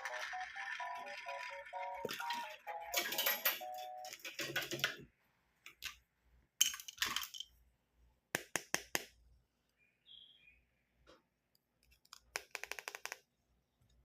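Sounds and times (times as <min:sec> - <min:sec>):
short musical notes: 0:00.0 - 0:04.1
plastic toy pieces clicking: 0:00.0 - 0:05.0, 0:11.9 - 0:13.2.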